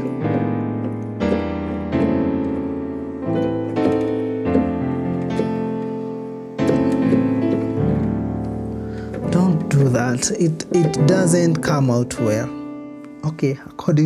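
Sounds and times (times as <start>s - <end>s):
keyboard playing chords: 0.0s - 14.0s.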